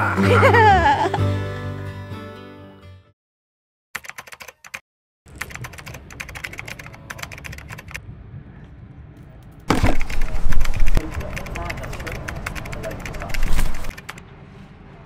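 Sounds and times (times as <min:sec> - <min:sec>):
keyboard typing: 0:04.0 - 0:04.8, 0:05.4 - 0:08.0, 0:09.7 - 0:14.2.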